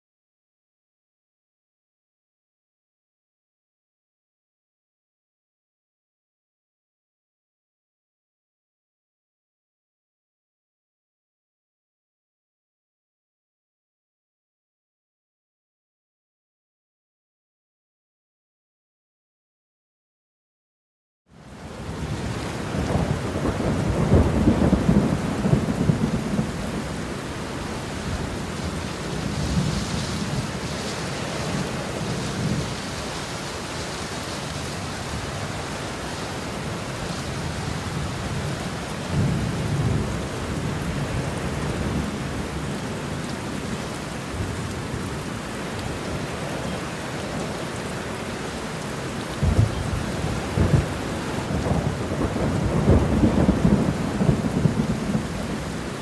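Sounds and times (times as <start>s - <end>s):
steady rain falling: 21.3s - 56.0s
low rumbles of thunder: 21.8s - 32.8s, 37.3s - 45.2s, 49.3s - 56.0s.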